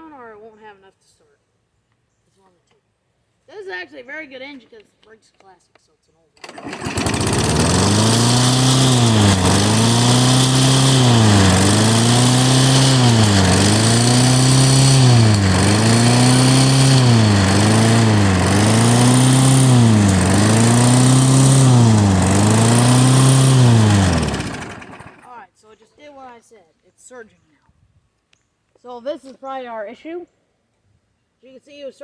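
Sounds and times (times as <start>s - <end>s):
lawn mower engine surging: 6.4s - 25.3s.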